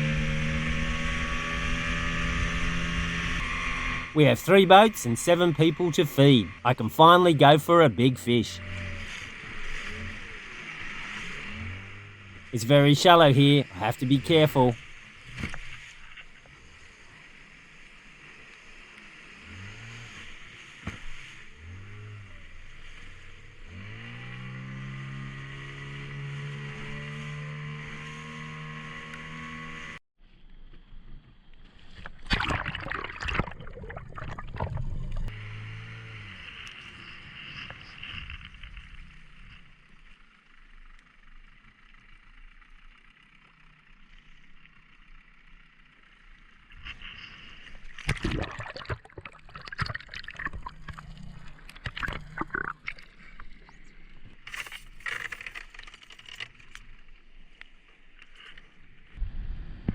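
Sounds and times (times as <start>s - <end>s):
outboard motor revving: 0.0s - 30.0s, 34.2s - 40.0s.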